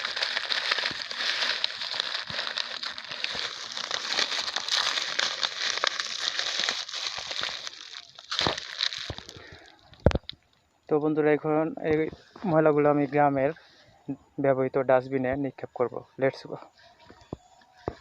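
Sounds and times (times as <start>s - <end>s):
plastic rubbish crinkling: 0.0s - 10.3s.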